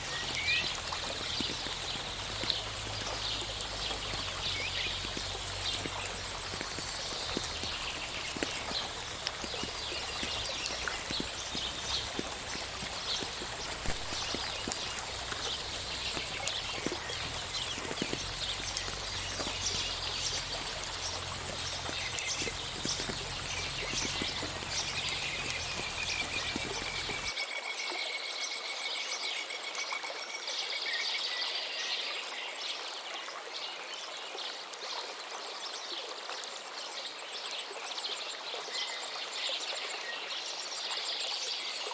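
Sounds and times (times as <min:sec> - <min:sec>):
birds chirping: 0:00.0 - 0:27.4
steady rain dripping: 0:00.0 - 0:27.4.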